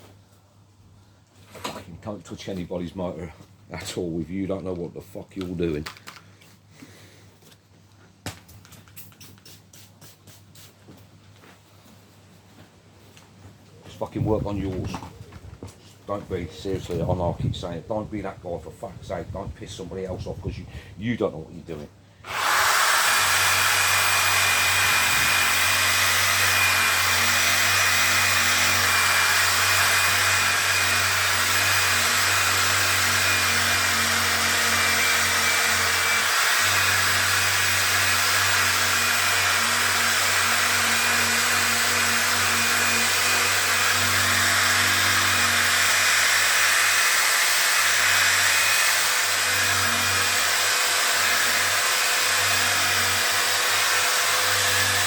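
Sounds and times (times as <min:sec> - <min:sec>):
electric sander on plastic: 0:22.3 - 0:55.0.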